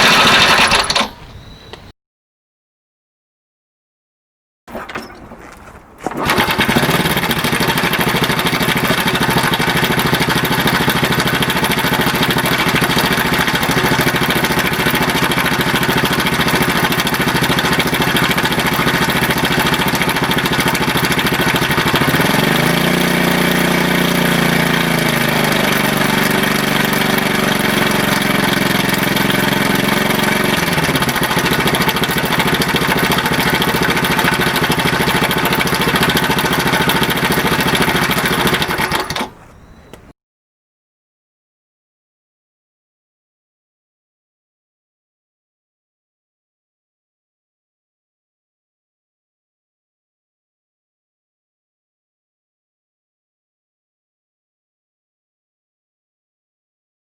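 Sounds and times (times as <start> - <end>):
rattling cam chain noise: 0.0 - 1.3
motorcycle engine idling and revving: 0.0 - 1.5, 6.2 - 40.1.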